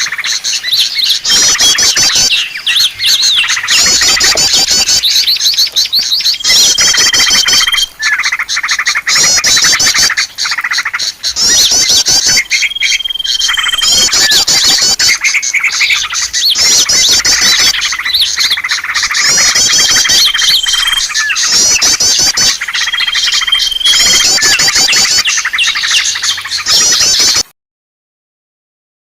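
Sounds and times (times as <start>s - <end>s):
small birds chirping: 0.0s - 27.5s.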